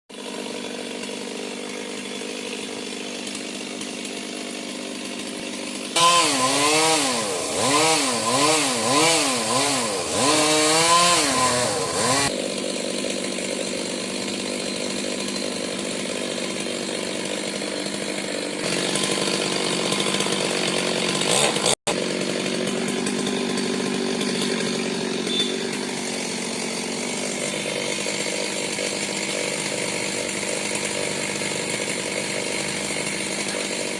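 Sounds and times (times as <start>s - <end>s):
chainsaw running and revving: 0.1s - 33.9s.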